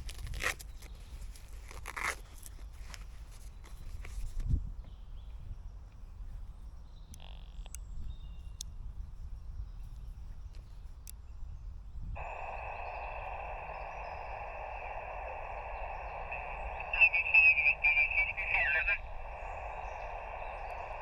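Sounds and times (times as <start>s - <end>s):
garbled warbling radio signal: 12.2s - 21.0s
low rumble: 12.2s - 21.0s
shortwave radio hiss: 12.2s - 21.0s.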